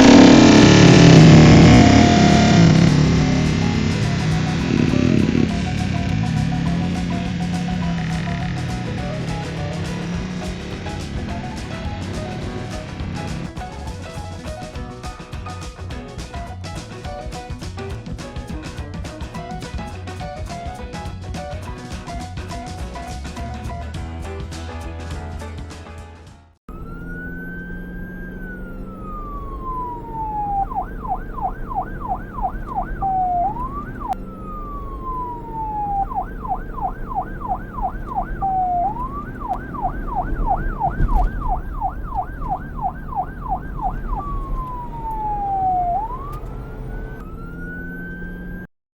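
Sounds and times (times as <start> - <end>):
electronic police siren: 0.0 - 13.5, 26.7 - 48.7.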